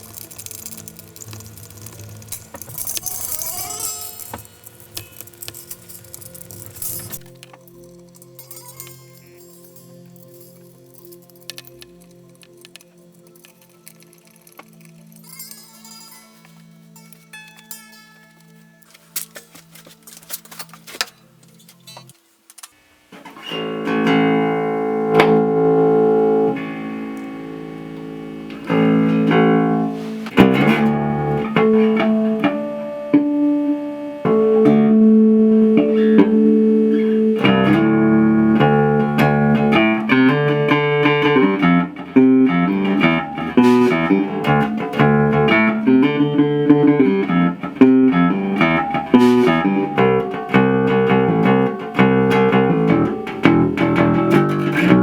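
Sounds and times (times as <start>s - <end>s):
electric bass guitar notes: 23.6s - 55.0s.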